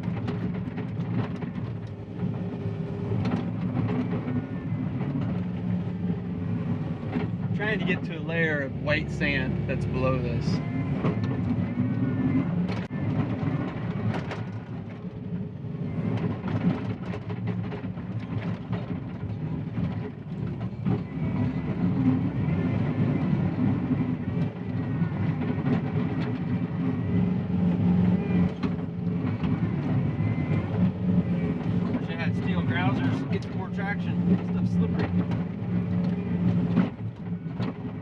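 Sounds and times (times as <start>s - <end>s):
diesel engine running: 0.0s - 38.0s.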